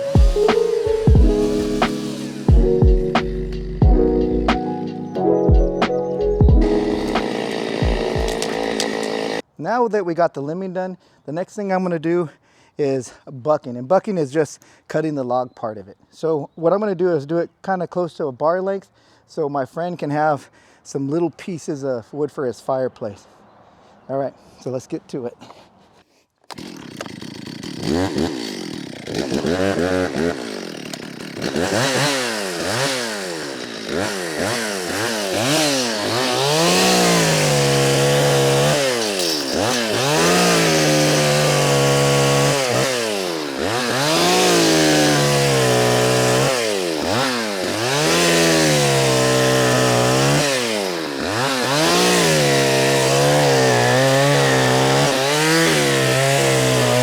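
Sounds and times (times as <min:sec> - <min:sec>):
chainsaw cutting log: 0:00.0 - 0:03.9, 0:06.6 - 0:09.5, 0:26.4 - 0:57.0.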